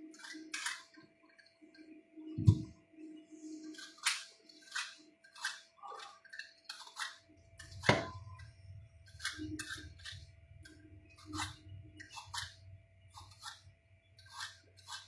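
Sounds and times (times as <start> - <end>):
kitchen utensils and dishes clicking: 0.1 - 1.0.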